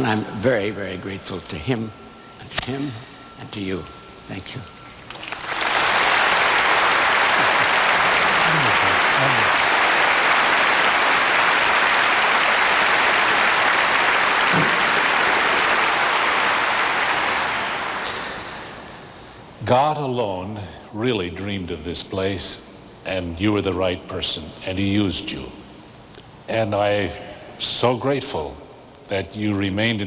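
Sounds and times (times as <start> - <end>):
audience applauding: 5.1 - 18.9.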